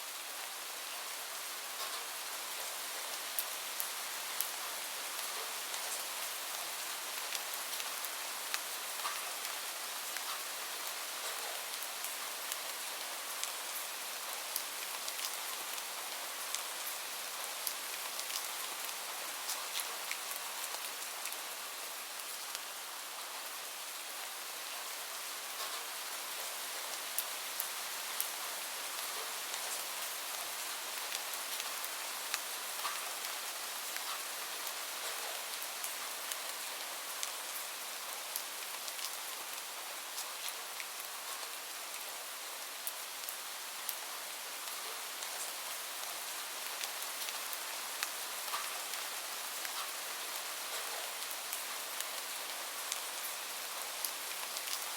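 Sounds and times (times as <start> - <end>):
steady rain hiss: 0.0 - 54.9
raindrop ticks: 48.0 - 49.0.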